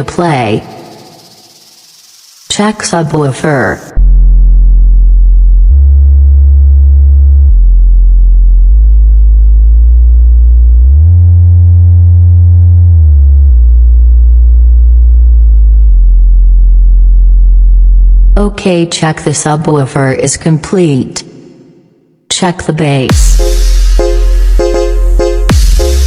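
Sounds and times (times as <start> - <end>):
low bass test tone: 4.0 - 18.5, 23.1 - 26.0.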